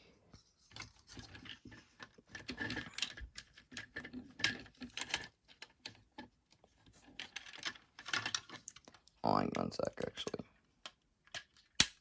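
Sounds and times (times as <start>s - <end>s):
hard plastic toy parts clicking: 1.2s - 6.2s, 7.1s - 8.9s, 9.5s - 12.0s.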